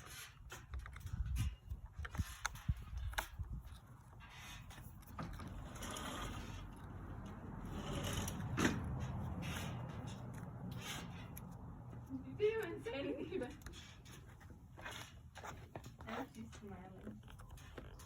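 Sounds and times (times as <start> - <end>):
screw grinding noise: 0.0 - 12.7.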